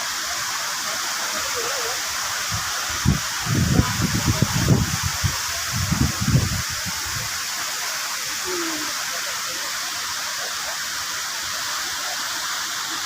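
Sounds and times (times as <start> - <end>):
strong wind blowing: 2.5 - 7.3.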